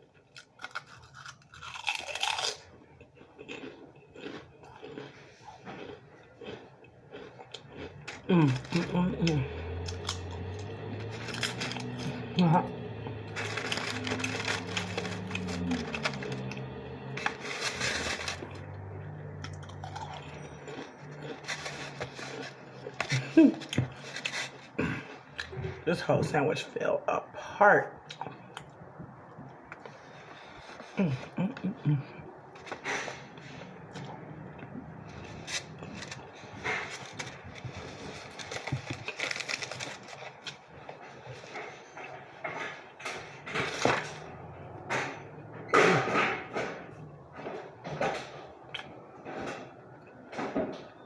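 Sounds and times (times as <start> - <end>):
sandwich crackling and scraping: 0.0 - 8.9, 9.5 - 12.3, 12.9 - 25.4, 34.6 - 44.4
chewing with wet mouth clicks: 3.0 - 8.3
steady low hum: 7.4 - 38.8.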